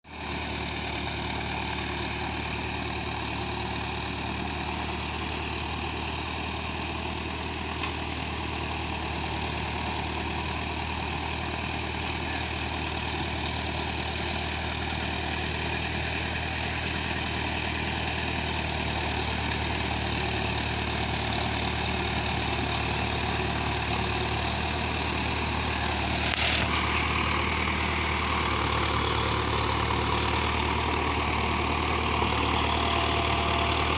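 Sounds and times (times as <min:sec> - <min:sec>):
engine idling: 0:00.1 - 0:33.9
bright hiss: 0:26.4 - 0:31.0.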